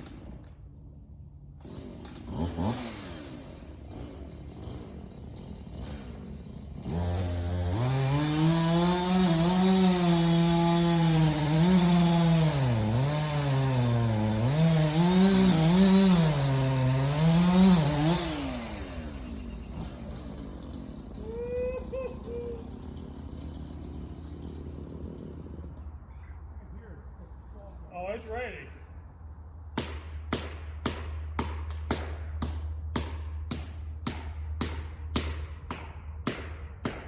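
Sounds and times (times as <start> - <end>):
chainsaw revving and cutting: 1.6 - 25.9.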